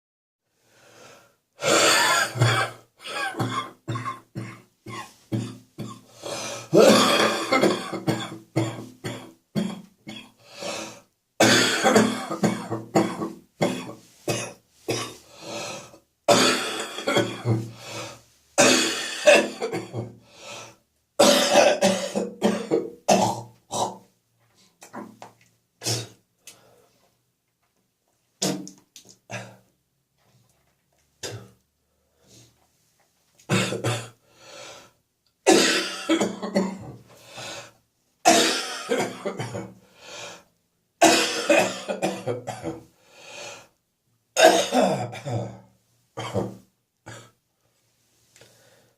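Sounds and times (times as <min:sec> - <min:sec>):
person coughing phlegmy: 0:01.6 - 0:06.1, 0:06.7 - 0:10.4, 0:11.4 - 0:15.2, 0:16.3 - 0:17.8, 0:18.6 - 0:20.2, 0:21.2 - 0:24.0, 0:25.8 - 0:26.2, 0:31.2 - 0:31.6, 0:33.5 - 0:34.2, 0:35.5 - 0:37.0, 0:38.3 - 0:39.8, 0:41.0 - 0:42.8, 0:44.4 - 0:47.4.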